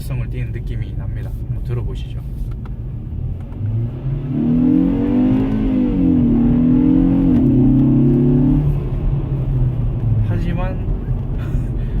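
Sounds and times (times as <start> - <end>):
car engine accelerating hard: 2.8 - 12.0.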